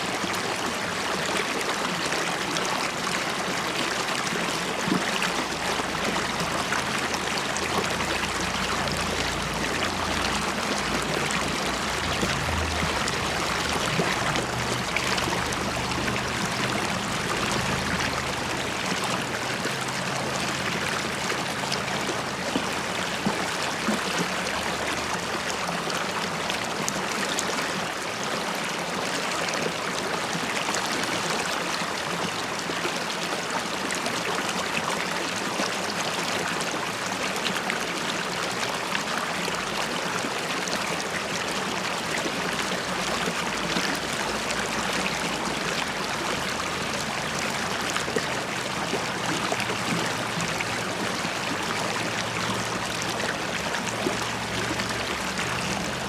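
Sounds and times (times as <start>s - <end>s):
river flowing over stones: 0.0s - 56.0s.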